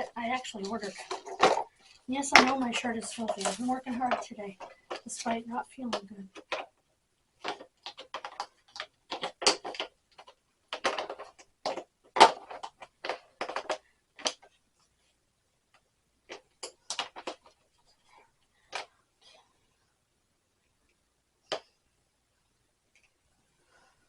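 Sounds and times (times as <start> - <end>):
plastic toolkit case handled: 0.6 - 5.1, 7.4 - 14.5.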